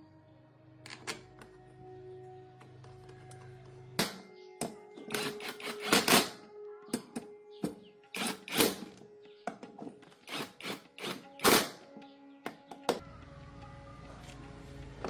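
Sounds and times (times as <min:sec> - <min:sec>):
faint background music: 0:00.0 - 0:15.0
clicks and knocks of tools handled: 0:00.8 - 0:01.5.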